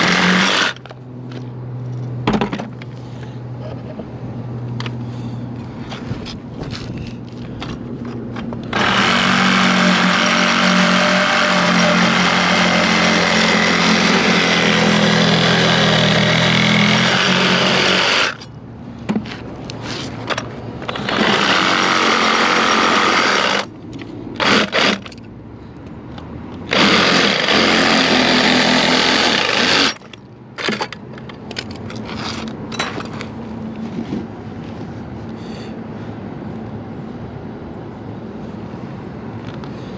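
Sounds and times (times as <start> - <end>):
power tool rasping: 0.0 - 0.8, 8.7 - 18.4, 20.9 - 23.7, 26.7 - 30.0
knocks and clatter: 2.2 - 2.9.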